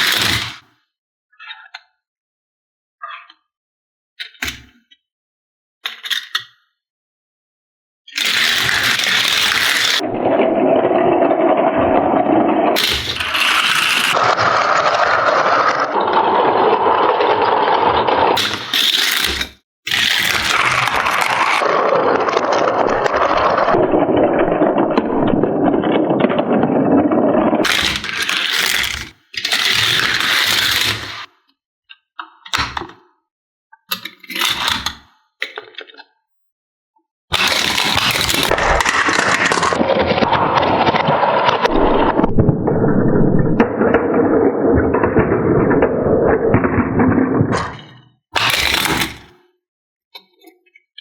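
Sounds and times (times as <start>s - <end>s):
plastic scraping and rattling: 8.2s - 31.1s, 37.4s - 49.3s
toy cars rolling on plastic track: 8.2s - 31.3s, 37.3s - 49.3s.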